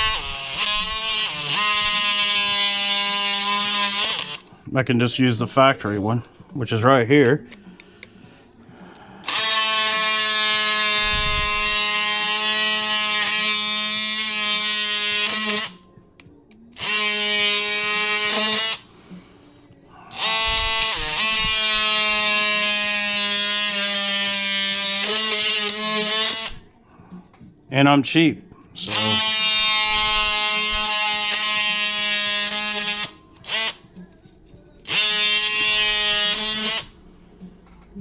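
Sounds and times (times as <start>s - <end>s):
electric saw buzzing: 0.0s - 4.6s, 9.2s - 15.8s, 16.8s - 18.9s, 20.1s - 26.6s, 28.8s - 33.9s, 34.8s - 37.0s.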